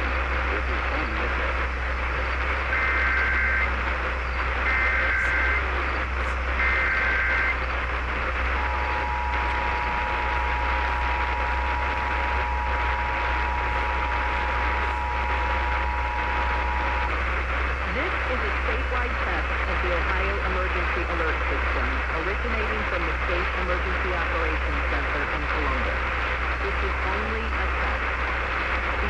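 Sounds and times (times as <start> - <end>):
low hum: 0.0 - 29.0
static hiss: 0.0 - 29.0
two-tone data screech: 2.2 - 19.1
two-tone attention signal: 2.7 - 3.8, 4.6 - 7.6, 8.5 - 17.2.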